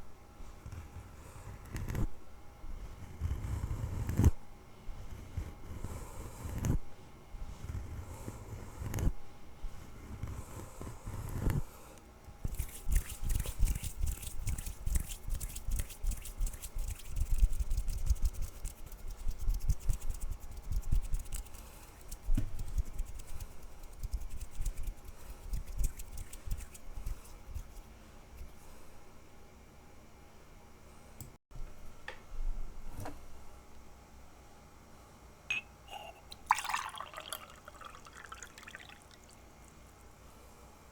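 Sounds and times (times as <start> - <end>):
hands rubbing and tapping: 12.5 - 28.5.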